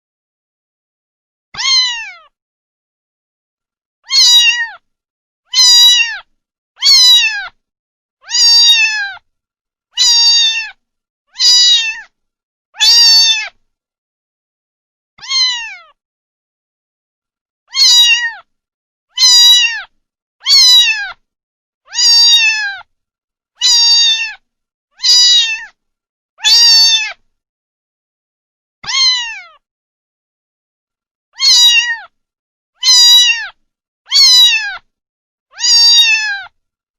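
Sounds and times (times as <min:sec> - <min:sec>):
kitten meowing: 0:01.6 - 0:02.3, 0:04.0 - 0:04.8, 0:05.5 - 0:07.6, 0:08.2 - 0:09.2, 0:10.0 - 0:12.1, 0:12.8 - 0:13.6, 0:15.2 - 0:16.0, 0:17.7 - 0:18.5, 0:19.1 - 0:21.2, 0:21.9 - 0:22.9, 0:23.6 - 0:24.4, 0:25.0 - 0:25.8, 0:26.4 - 0:27.2, 0:28.8 - 0:29.6, 0:31.4 - 0:32.1, 0:32.8 - 0:34.9, 0:35.5 - 0:36.6.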